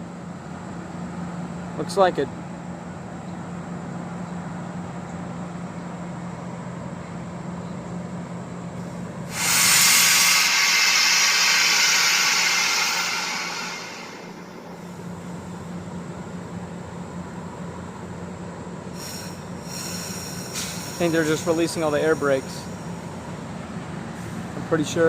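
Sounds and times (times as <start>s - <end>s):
diesel locomotive idling hum: 0.0s - 25.0s
air brakes hissing: 8.8s - 15.5s, 18.9s - 23.3s, 24.0s - 24.7s.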